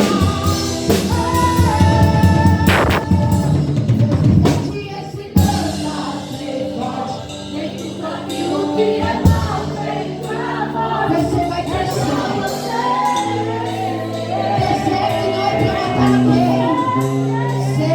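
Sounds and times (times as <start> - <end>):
held bass notes: 0.0 - 4.5
religious song singing: 0.0 - 17.9
drum hits: 2.5 - 4.0.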